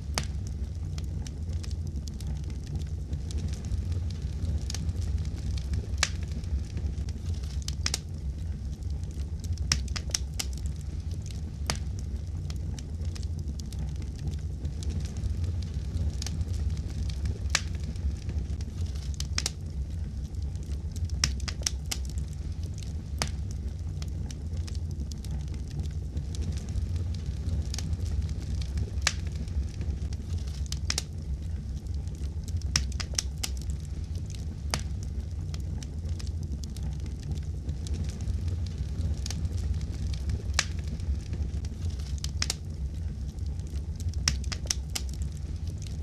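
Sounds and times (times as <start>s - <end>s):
fire crackling: 0.0s - 46.0s
fire pops and snaps: 0.0s - 46.0s
low fire rumble: 0.0s - 46.0s.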